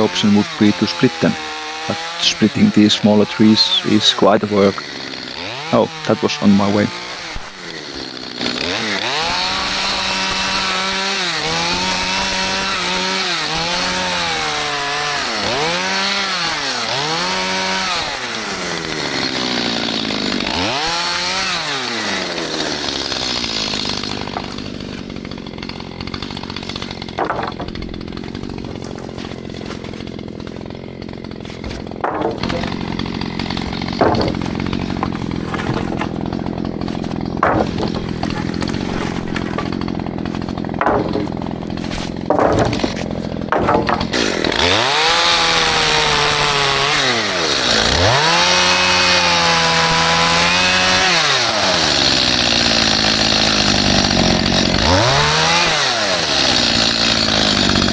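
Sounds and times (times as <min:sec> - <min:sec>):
chainsaw revving and idling: 0:00.0 - 0:57.9
sharp knocks: 0:27.0 - 0:30.0, 0:31.5 - 0:47.0.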